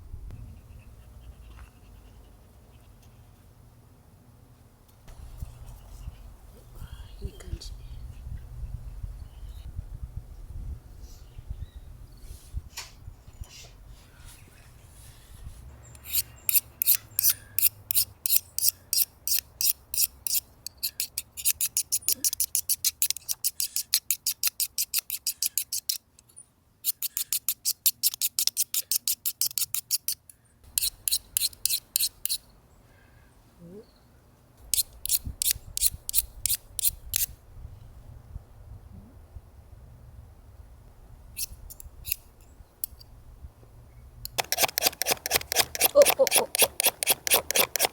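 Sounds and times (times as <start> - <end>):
striker scraping fire-starter rod: 16.0 - 26.0, 44.3 - 47.9.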